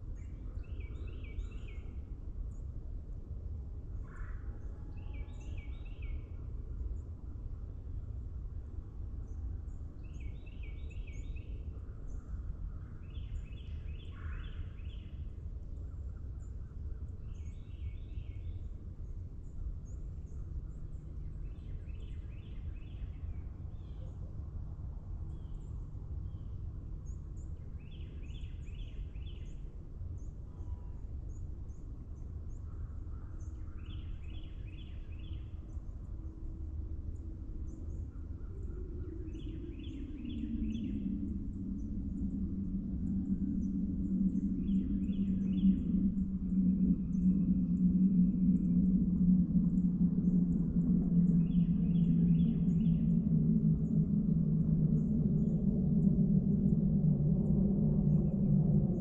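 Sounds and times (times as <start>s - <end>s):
faint high bird chirps: 4.0s - 7.1s, 9.2s - 36.6s, 37.2s - 59.0s
steady low rumble: 35.5s - 59.0s.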